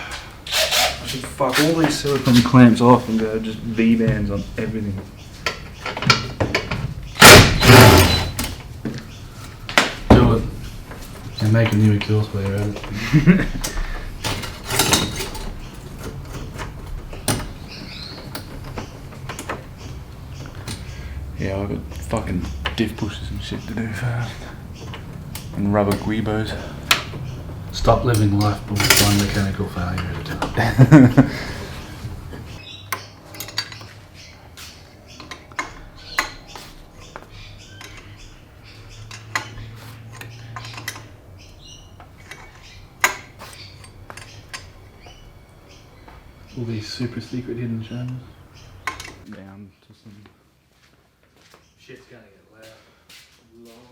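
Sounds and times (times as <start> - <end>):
light clicks and knocks: 4.0 - 41.4
metal tools clinking: 11.3 - 21.2, 21.8 - 49.2.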